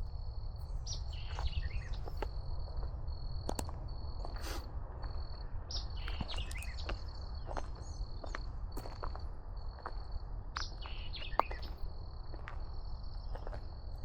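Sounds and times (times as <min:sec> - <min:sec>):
birds chirping: 0:05.7 - 0:08.4, 0:10.6 - 0:11.8.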